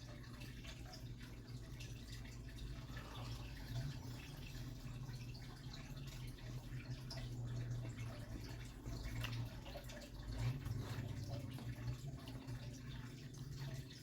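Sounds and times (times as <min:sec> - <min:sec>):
wet chewing and mouth clicks: 0:08.8 - 0:12.0.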